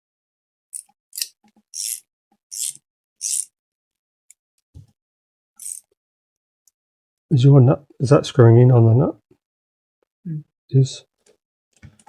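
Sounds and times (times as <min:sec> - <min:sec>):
raspy hand tool strokes: 0:01.2 - 0:03.5.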